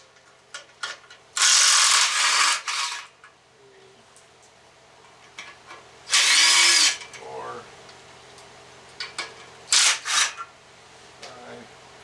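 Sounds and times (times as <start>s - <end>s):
power tool ratcheting burst: 1.4s - 3.1s, 6.1s - 7.0s, 9.7s - 10.4s.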